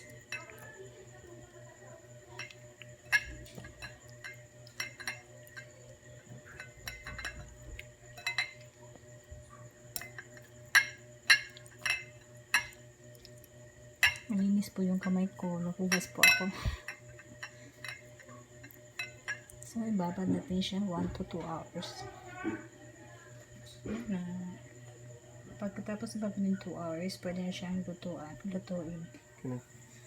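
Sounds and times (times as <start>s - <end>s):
light clinks against a bowl: 0.0s - 0.8s, 2.3s - 8.8s, 9.9s - 12.8s, 14.0s - 14.4s, 15.0s - 20.5s.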